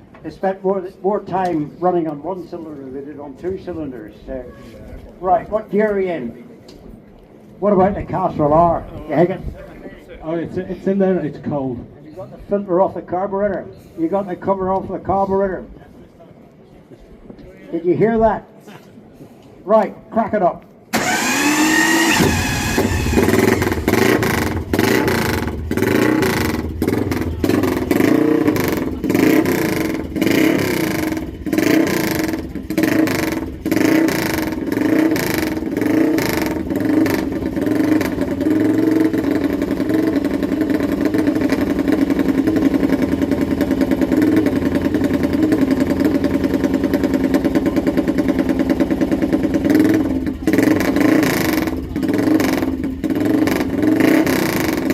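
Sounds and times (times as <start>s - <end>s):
motorcycle engine revving: 21.0s - 54.9s.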